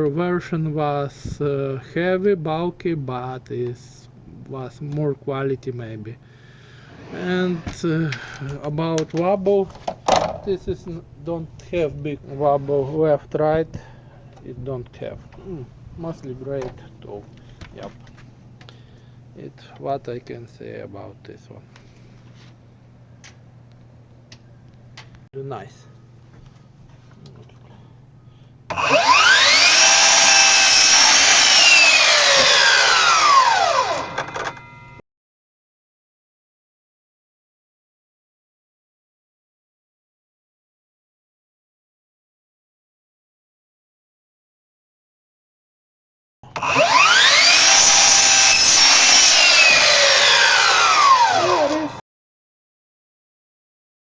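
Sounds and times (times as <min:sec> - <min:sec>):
miter saw whine: 0:28.7 - 0:35.0, 0:46.5 - 0:52.0.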